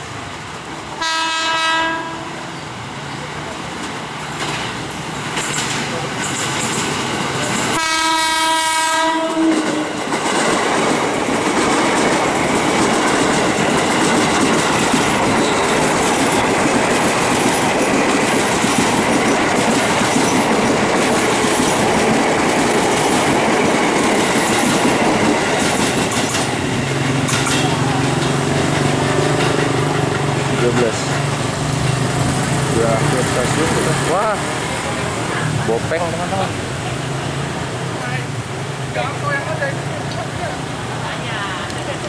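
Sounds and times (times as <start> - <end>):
train passing on rails: 0.0 - 42.0
train horn: 1.0 - 2.5, 7.7 - 10.0.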